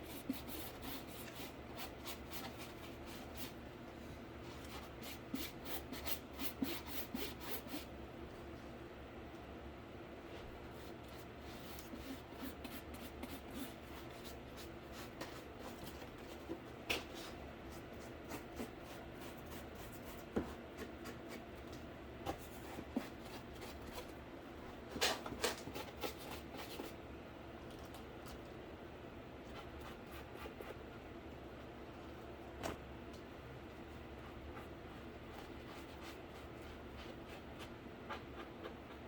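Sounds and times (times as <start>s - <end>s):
rubbing and scraping on cardboard: 0.0s - 3.6s, 34.3s - 39.0s.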